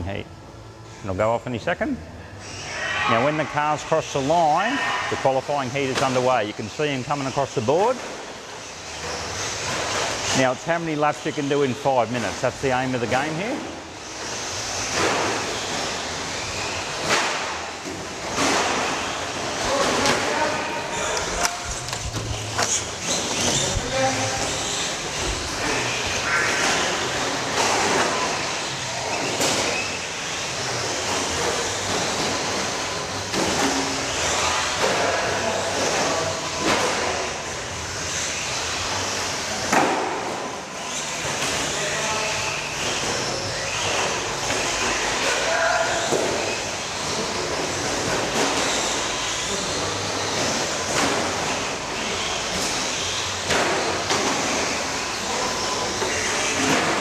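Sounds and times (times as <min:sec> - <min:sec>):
remote-control cars racing: 0:02.4 - 0:57.0.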